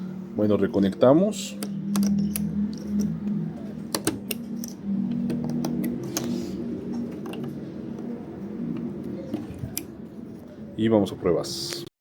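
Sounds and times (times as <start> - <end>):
low steady hum: 0.0 - 11.9
connectors clicking and tapping: 0.8 - 8.1, 8.7 - 9.9.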